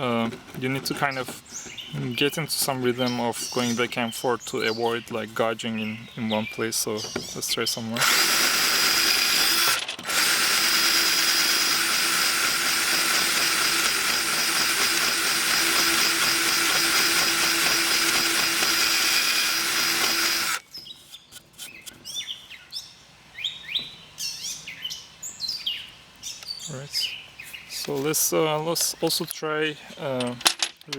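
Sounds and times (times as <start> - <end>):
birds chirping: 0.0 - 30.4
drill rasp grinding wood: 8.0 - 20.6.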